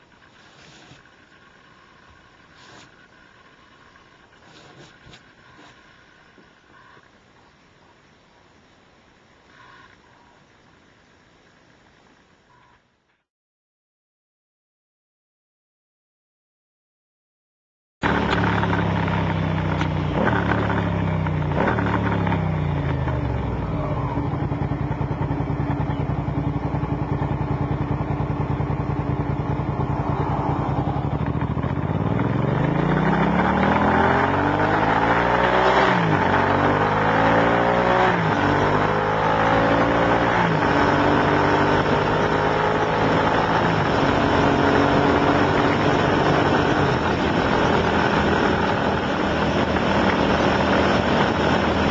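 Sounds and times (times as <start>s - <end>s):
engine running with changing pitch: 0.0s - 7.2s, 18.0s - 51.9s.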